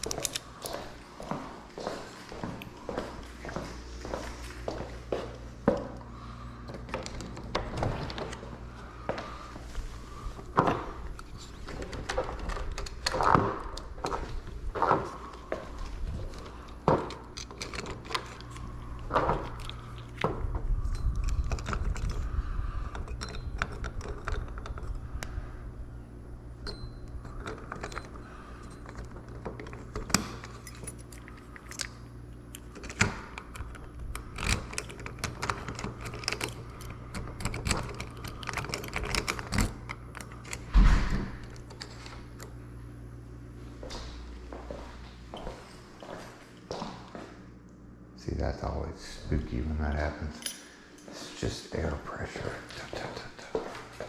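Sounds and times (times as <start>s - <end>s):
keys and lock parts clicking: 0.0s - 0.8s, 16.3s - 22.3s, 22.9s - 25.2s, 26.6s - 40.8s, 41.4s - 42.6s, 50.4s - 51.1s
steady low hum: 0.0s - 54.0s.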